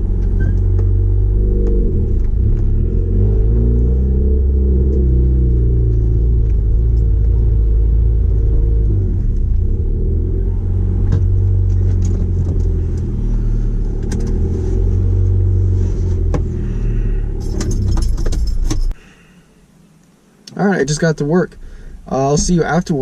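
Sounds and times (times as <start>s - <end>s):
car engine rumbling: 0.0s - 23.0s
keys jingling: 17.4s - 19.0s.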